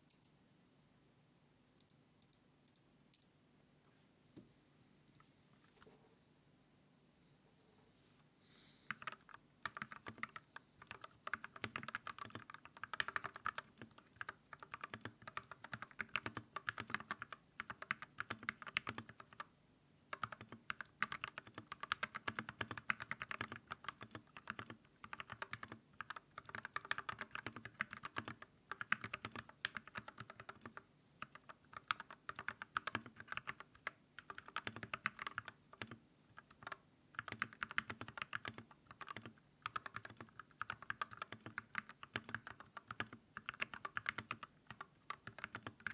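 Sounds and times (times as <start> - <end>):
mechanical keyboard typing: 8.9 - 19.5, 20.1 - 45.9.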